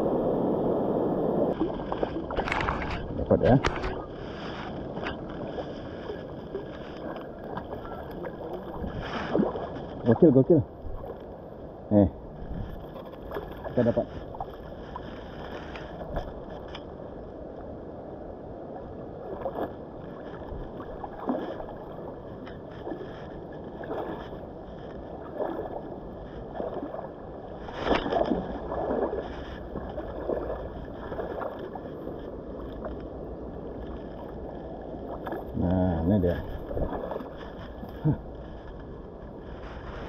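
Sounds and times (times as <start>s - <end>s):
water splashes: 0.0s - 17.2s, 18.7s - 40.0s.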